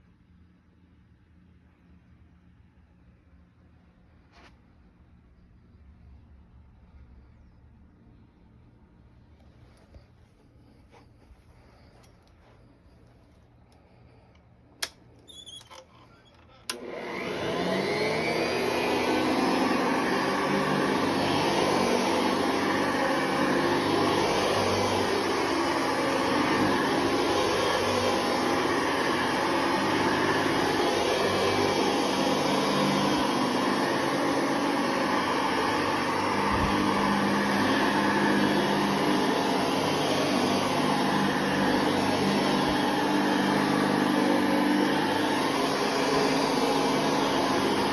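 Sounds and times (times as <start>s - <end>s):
vacuum cleaner motor whining: 14.8s - 47.9s
vacuum switch click: 16.7s - 17.0s.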